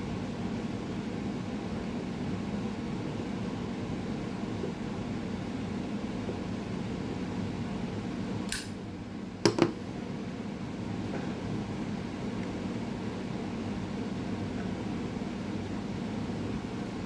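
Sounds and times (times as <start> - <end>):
steady background hum: 0.0 - 17.0
metal lighter clicks: 8.5 - 8.8.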